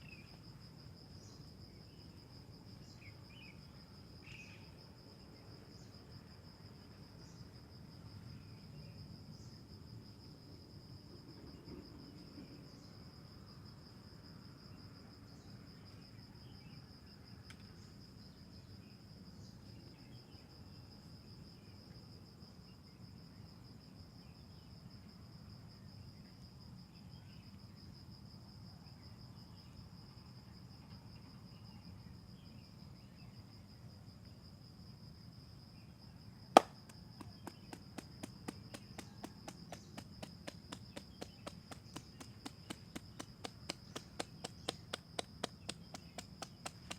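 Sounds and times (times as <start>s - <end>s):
insect trilling: 36.6s - 46.9s.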